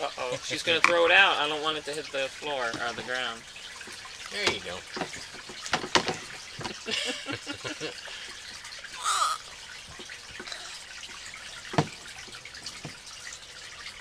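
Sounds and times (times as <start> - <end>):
small knocks and clatter: 0.6 - 6.9, 9.8 - 13.3.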